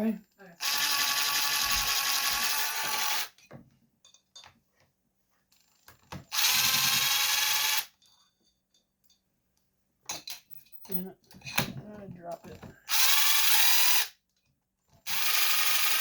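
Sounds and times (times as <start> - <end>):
impact driver running: 0.6 - 3.4, 6.3 - 7.9, 12.9 - 14.1, 15.1 - 16.0.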